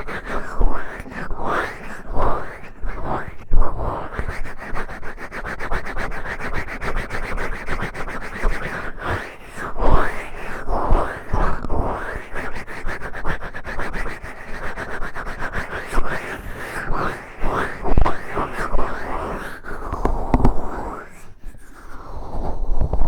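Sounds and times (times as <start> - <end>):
fingertip scratching microphone: 0.0 - 6.2, 19.8 - 21.0.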